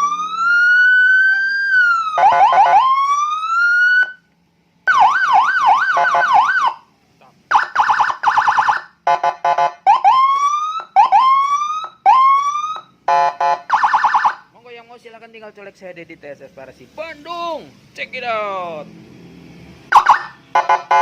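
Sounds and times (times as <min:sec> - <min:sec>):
electronic siren wailing and yelping: 0:00.0 - 0:04.2, 0:04.8 - 0:06.9, 0:07.5 - 0:14.5, 0:19.9 - 0:21.0.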